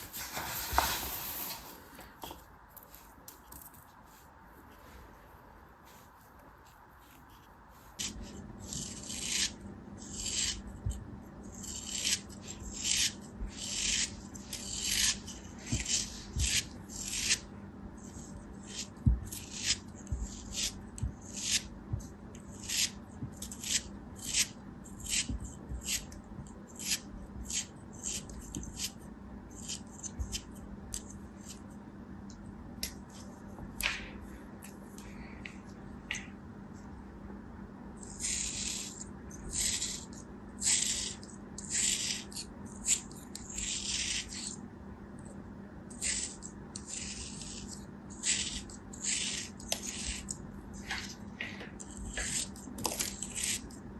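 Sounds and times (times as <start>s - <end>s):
faint low hum: 0.0s - 53.9s.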